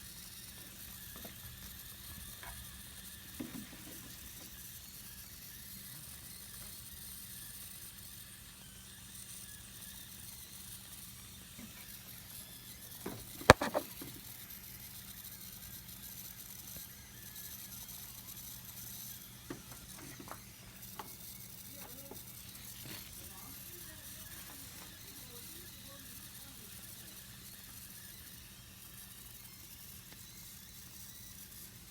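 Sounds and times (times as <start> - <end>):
sharp click: 13.5 - 14.0.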